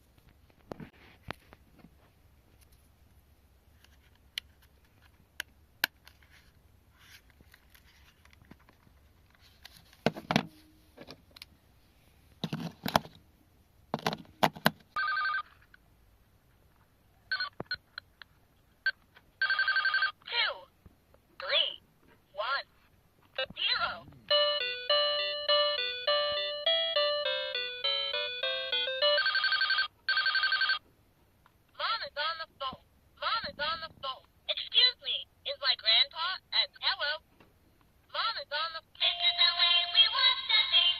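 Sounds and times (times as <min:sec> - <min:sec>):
plastic parts clicking and knocking: 0:12.4 - 0:13.2, 0:13.9 - 0:14.9
toy phone electronic ringing: 0:15.0 - 0:15.6, 0:19.4 - 0:20.2, 0:24.3 - 0:30.8.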